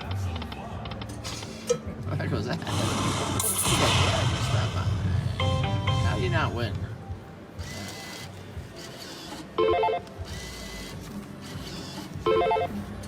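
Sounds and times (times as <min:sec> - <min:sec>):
casino background hum: 0:00.0 - 0:13.0
slot machine chiming jingle: 0:05.4 - 0:06.5.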